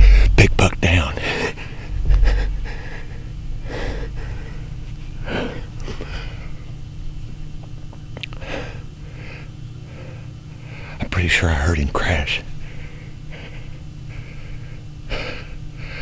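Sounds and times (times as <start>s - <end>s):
man breathing hard: 1.2s - 6.8s, 8.4s - 11.0s, 12.6s - 16.0s.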